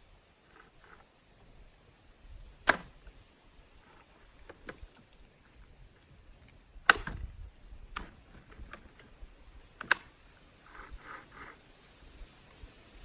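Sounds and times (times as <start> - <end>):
sharp knocks and clicks: 2.6 - 3.0, 6.9 - 9.1.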